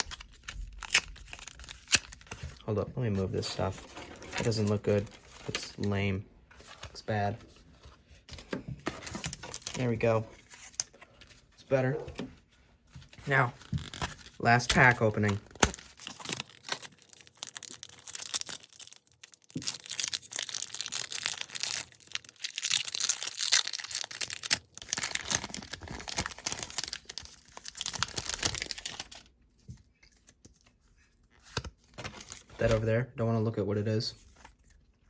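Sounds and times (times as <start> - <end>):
foil wrapper crinkling and tearing: 0.0 - 2.6, 13.3 - 29.3.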